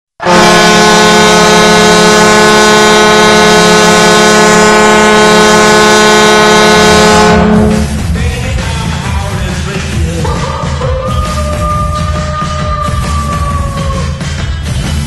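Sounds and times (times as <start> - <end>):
goal horn blast: 0.2 - 8.0.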